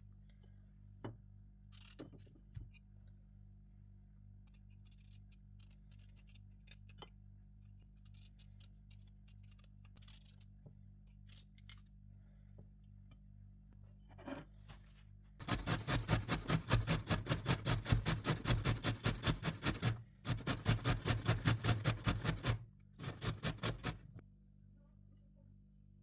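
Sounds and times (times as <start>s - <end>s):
clicks and scraping of food cut: 4.4s - 11.9s.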